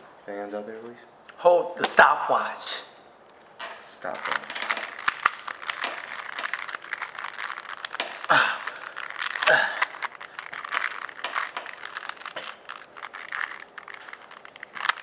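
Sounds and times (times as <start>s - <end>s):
puzzle cube clicking: 4.1s - 15.0s.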